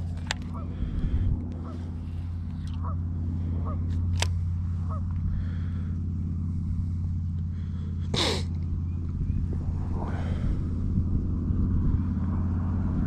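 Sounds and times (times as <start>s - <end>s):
wind buffeting microphone: 0.0s - 1.8s, 8.6s - 13.0s.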